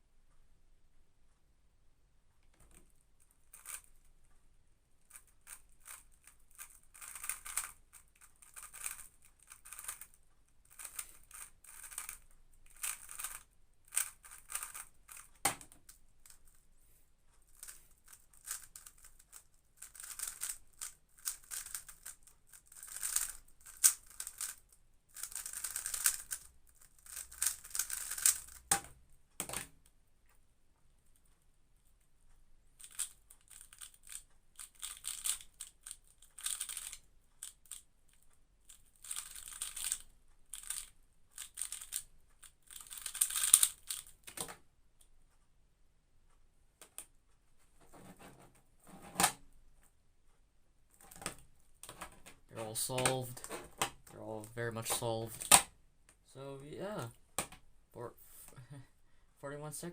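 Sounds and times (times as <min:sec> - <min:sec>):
plastic cube clicking: 0:03.5 - 0:03.9, 0:05.1 - 0:16.5, 0:17.6 - 0:29.8, 0:32.8 - 0:44.6.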